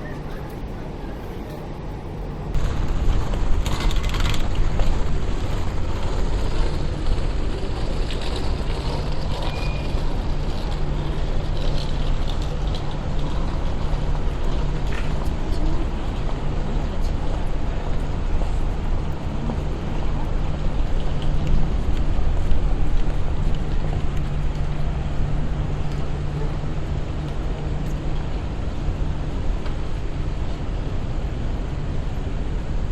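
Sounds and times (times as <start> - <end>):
low hum: 0.0 - 32.9
vehicle engine rumble: 0.0 - 32.9.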